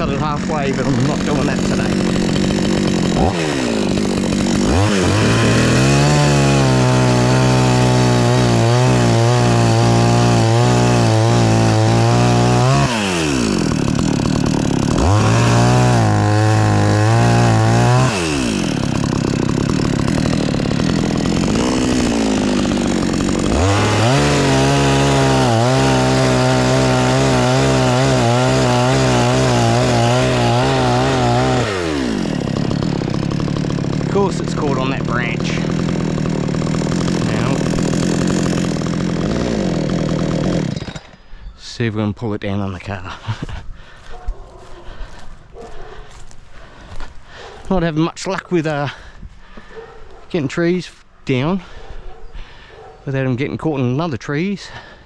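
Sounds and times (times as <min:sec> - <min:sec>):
chainsaw revving while cutting wood: 0:00.0 - 0:41.2
chainsaw idling: 0:00.0 - 0:41.3.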